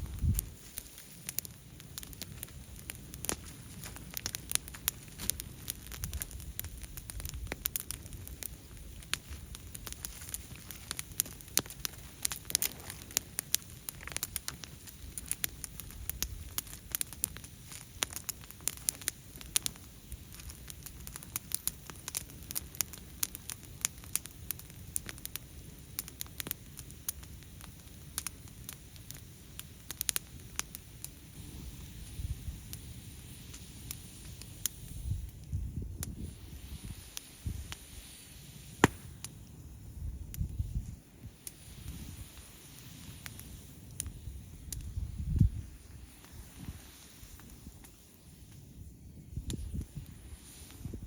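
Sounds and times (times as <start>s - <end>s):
bonfire crackling: 0.0s - 51.0s.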